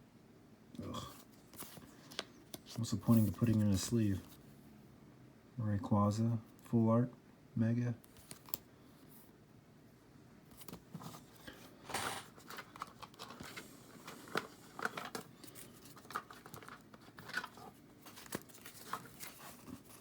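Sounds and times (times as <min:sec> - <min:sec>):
cards in plastic sleeves handled: 0:01.2 - 0:04.4, 0:08.0 - 0:08.7, 0:12.3 - 0:20.0.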